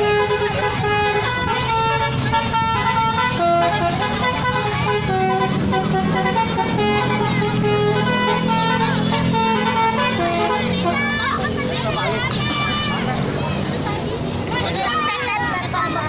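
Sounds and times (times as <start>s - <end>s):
musical air horn tune: 0.0s - 11.2s.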